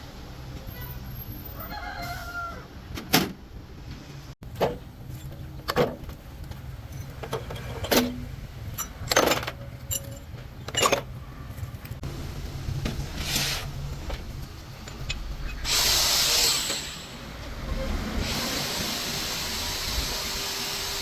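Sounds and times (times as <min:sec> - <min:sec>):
rooster crowing: 0:01.5 - 0:02.8.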